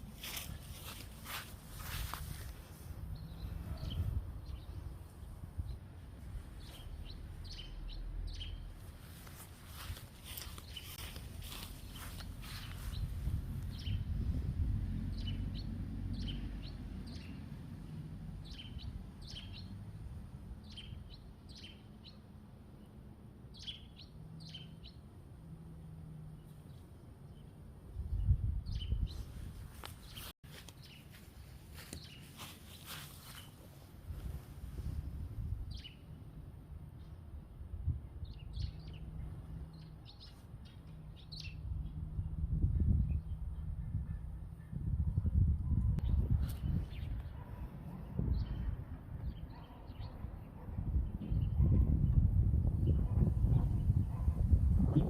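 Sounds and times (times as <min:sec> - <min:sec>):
small birds chirping: 0:00.0 - 0:14.4, 0:15.1 - 0:20.0, 0:20.6 - 0:36.3, 0:38.0 - 0:54.3
low wind rumble: 0:00.0 - 0:30.3, 0:33.6 - 0:55.0
small bird chirping: 0:09.7 - 0:14.0.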